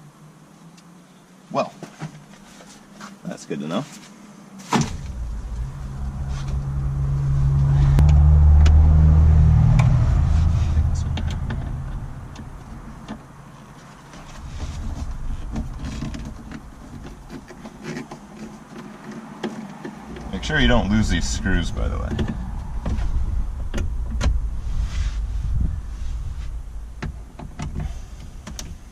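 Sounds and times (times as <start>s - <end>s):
vehicle engine hum: 4.2s - 28.9s.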